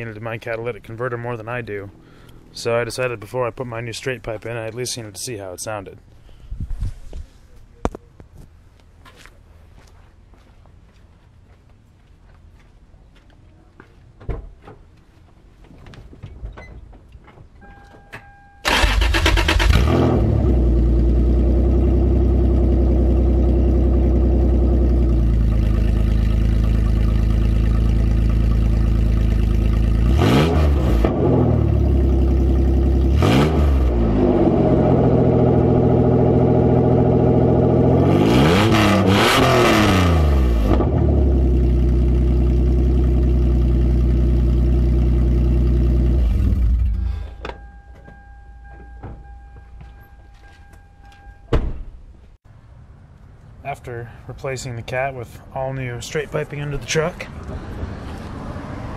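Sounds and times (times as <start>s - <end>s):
truck engine starting and idling: 16.6s - 50.2s
engine revving: 18.7s - 47.2s.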